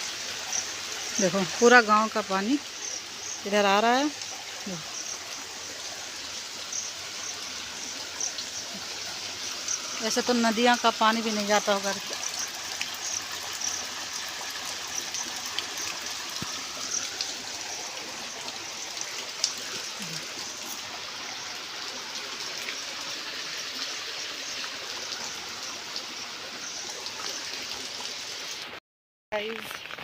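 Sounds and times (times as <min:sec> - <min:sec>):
running water in a channel: 0:00.0 - 0:30.0.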